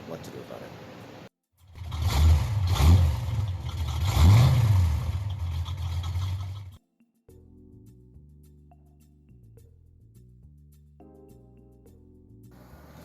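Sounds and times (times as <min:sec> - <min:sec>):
car engine revving: 0:01.7 - 0:06.8
soft music: 0:06.8 - 0:13.0.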